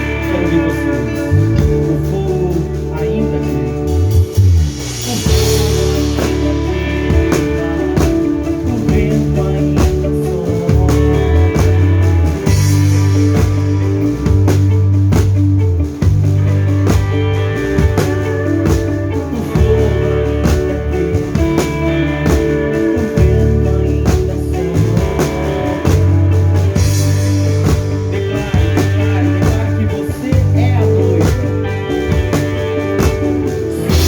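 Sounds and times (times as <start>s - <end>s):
live rock band: 0.0s - 34.0s.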